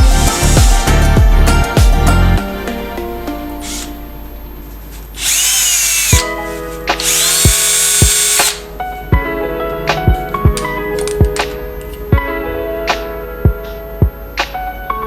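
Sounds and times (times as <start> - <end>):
background music: 0.0 - 15.0
power drill motor whining: 3.2 - 8.7.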